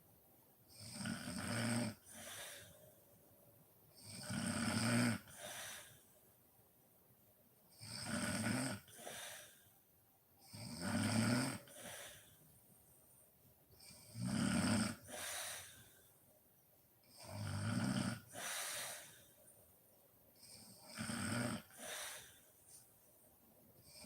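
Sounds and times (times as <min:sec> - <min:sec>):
woman snoring: 0:00.7 - 0:02.7, 0:04.0 - 0:06.0, 0:07.8 - 0:09.5, 0:10.4 - 0:12.3, 0:13.9 - 0:15.8, 0:17.1 - 0:19.2, 0:20.4 - 0:22.4
woman breathing while sleeping: 0:02.0 - 0:03.0, 0:05.3 - 0:06.2, 0:08.9 - 0:09.8, 0:11.6 - 0:12.5, 0:15.0 - 0:16.2, 0:18.2 - 0:19.5, 0:21.6 - 0:22.9.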